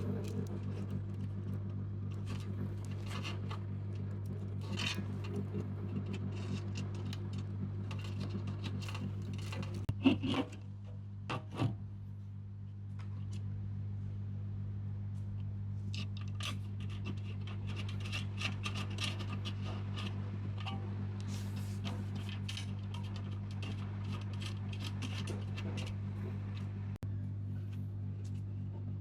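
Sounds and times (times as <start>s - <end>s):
small clicks taps and scratching: 0.0s - 9.9s, 15.9s - 20.8s, 21.8s - 26.7s
low hum: 0.0s - 15.6s, 16.2s - 29.0s.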